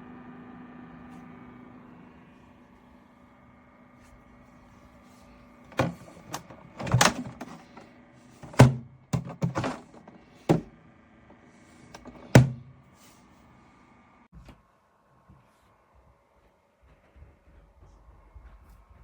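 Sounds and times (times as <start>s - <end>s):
mini fridge fan hum: 0.0s - 19.0s
handling knocks and thuds: 5.7s - 10.8s, 12.0s - 12.8s.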